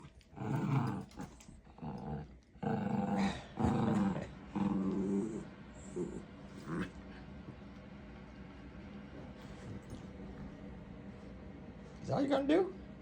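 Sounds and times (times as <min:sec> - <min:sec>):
puppies growling: 0:00.0 - 0:07.5.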